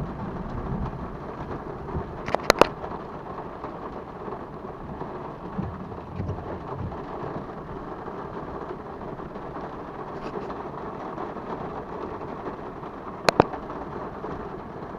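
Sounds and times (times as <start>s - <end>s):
low thunder rumbling: 0.0s - 8.5s
heavy rain on a vehicle: 0.0s - 14.9s
sharp clicks: 2.2s - 2.8s, 13.3s - 13.6s.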